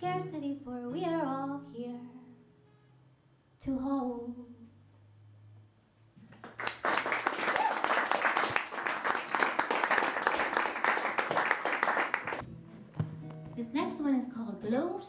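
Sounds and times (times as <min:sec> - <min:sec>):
audience applauding: 0:06.3 - 0:12.4.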